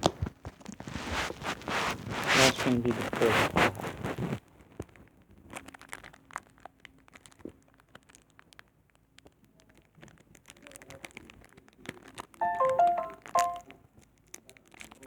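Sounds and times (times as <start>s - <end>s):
foil pack crinkling: 5.5s - 12.2s
brief pitched tone: 12.4s - 13.6s.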